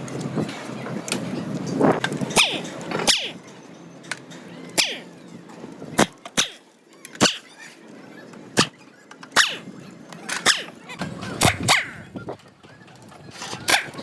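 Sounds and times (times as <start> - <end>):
dog barking: 11.6 - 12.0.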